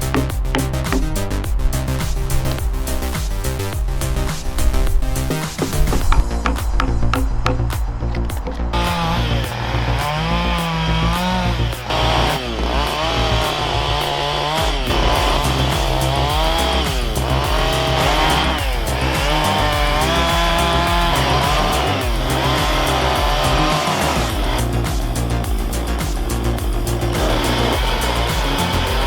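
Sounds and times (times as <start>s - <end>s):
electronic music with steady beat: 0.0s - 29.0s
chainsaw engine revving: 8.8s - 29.0s.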